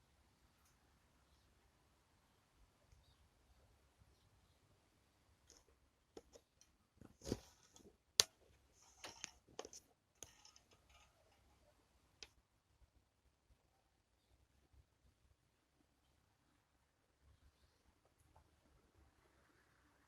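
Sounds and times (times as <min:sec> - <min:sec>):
soft clicks and light knocks: 0:05.4 - 0:12.4
brief rustling: 0:05.5 - 0:07.9.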